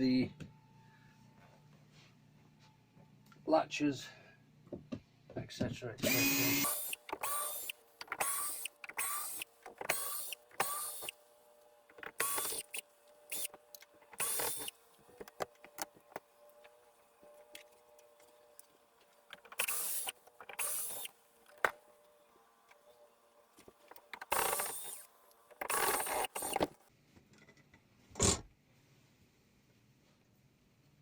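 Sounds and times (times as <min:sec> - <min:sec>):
cordless screwdriver whirring: 0:06.0 - 0:11.2, 0:12.0 - 0:13.6, 0:14.2 - 0:14.8, 0:19.4 - 0:21.1, 0:24.1 - 0:26.8.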